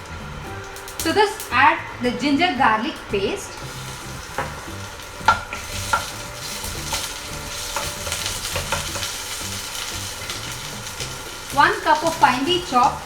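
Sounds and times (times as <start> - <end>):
paste sizzling in hot oil: 3.2 - 13.0
spatula knocking against pan: 4.4 - 11.4.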